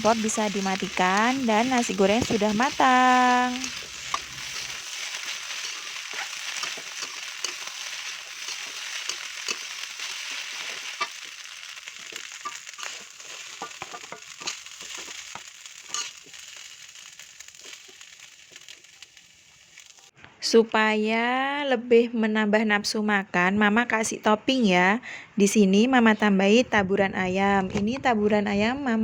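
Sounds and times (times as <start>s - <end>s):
rice sizzling in a pan: 0.0s - 20.1s.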